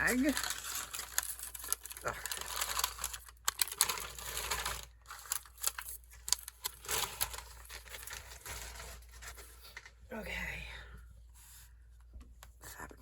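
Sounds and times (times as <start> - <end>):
plastic bag rustling: 0.0 - 9.8.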